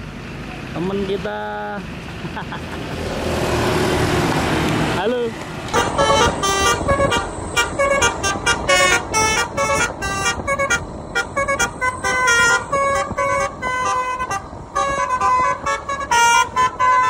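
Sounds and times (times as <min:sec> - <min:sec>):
multi-tone air horn tune: 0:05.7 - 0:17.0.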